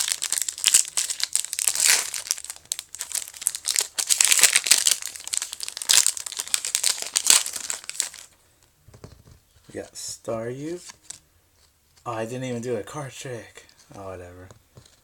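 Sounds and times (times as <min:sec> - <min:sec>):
foil wrapper crinkling: 0:00.0 - 0:08.4.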